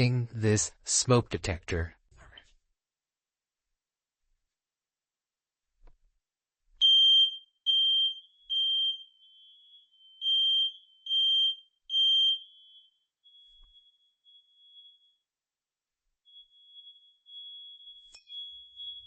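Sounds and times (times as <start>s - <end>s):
smoke detector beeping: 6.8s - 15.2s, 16.2s - 19.0s.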